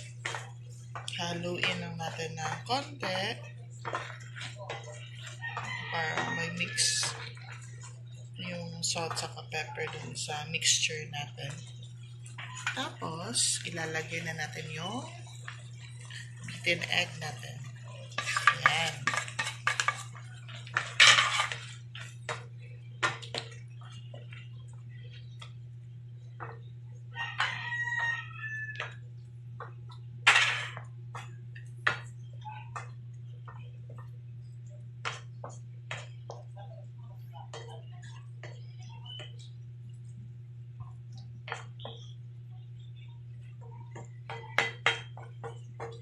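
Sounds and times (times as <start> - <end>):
rooster crowing: 5.4 - 7.0, 27.1 - 29.0
utensil scraping in frying pan: 17.9 - 22.5, 30.2 - 30.8.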